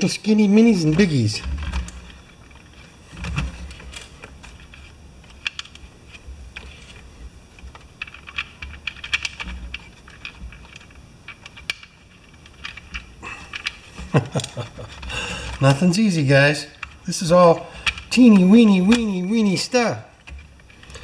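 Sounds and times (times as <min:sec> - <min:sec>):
tiny screws clicking: 0:03.7 - 0:07.0, 0:07.6 - 0:15.8, 0:17.8 - 0:19.1.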